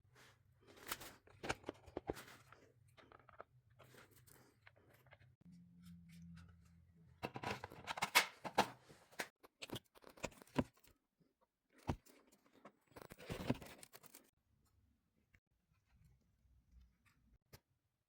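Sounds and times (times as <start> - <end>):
handling rustling and clicking: 11.8 - 14.3.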